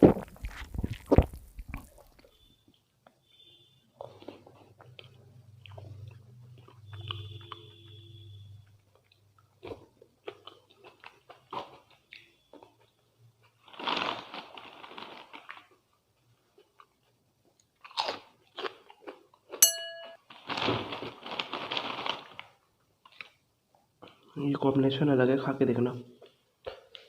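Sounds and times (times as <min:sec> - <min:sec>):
close chewing with mouth clicks: 0:00.0 - 0:02.4, 0:04.0 - 0:14.0, 0:14.6 - 0:19.6, 0:23.0 - 0:23.4
sharp clink: 0:19.6 - 0:20.2.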